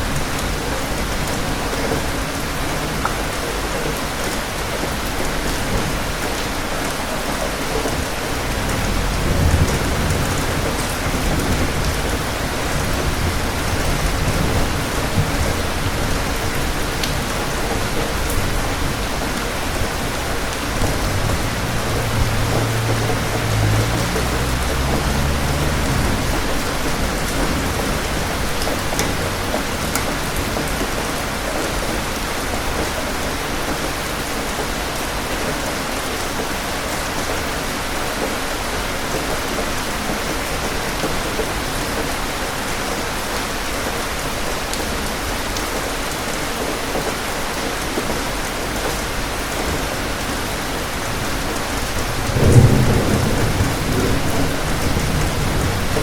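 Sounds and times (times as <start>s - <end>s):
heavy rain falling: 0.0s - 56.0s
thunder rumbling: 7.8s - 31.4s, 51.1s - 56.0s.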